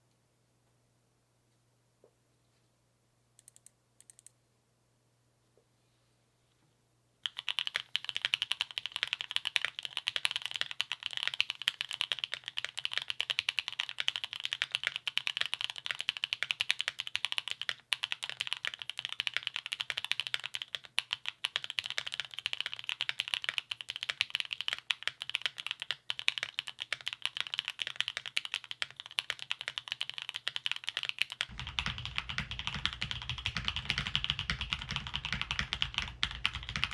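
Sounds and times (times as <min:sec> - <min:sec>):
fast mechanical keyboard typing: 0:03.4 - 0:04.3, 0:07.2 - 0:36.9
faint clicks: 0:03.4 - 0:04.4.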